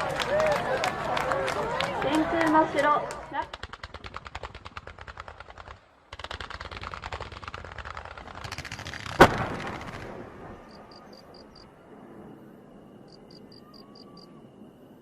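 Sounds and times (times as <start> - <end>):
firecrackers popping: 0.0 - 11.6
loud firecracker bang: 8.8 - 10.6.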